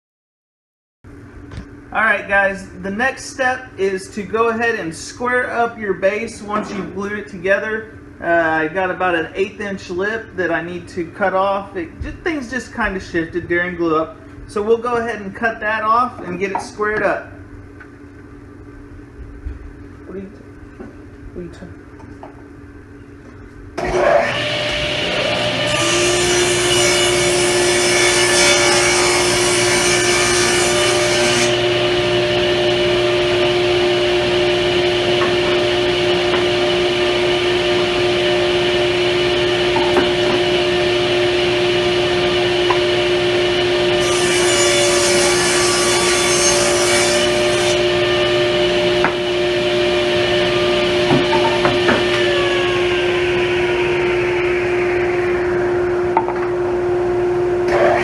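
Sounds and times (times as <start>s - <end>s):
saw blade cutting plywood: 23.8s - 31.6s, 43.9s - 47.8s
table saw motor humming: 23.8s - 58.0s.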